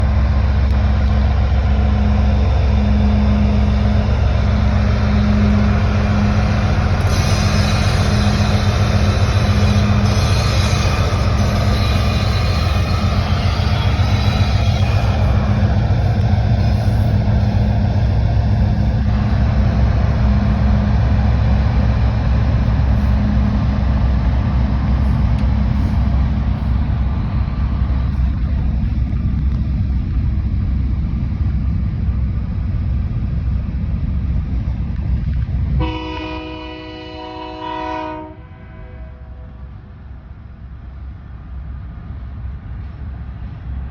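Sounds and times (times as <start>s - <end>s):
train rumbling past: 0.0s - 43.9s
train horn chord: 5.0s - 15.5s, 35.8s - 39.7s.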